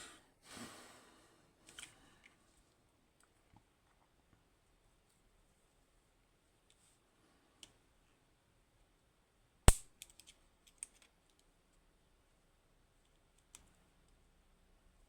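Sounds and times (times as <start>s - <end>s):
small light clicks and ticks: 7.6s - 7.8s, 9.7s - 11.9s, 13.0s - 14.2s
sharp metallic click: 9.7s - 10.3s.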